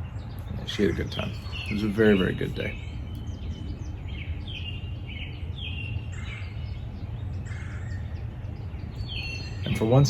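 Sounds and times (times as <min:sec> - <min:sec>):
small birds chirping: 0:00.0 - 0:10.0
steady low rumble: 0:00.0 - 0:10.0.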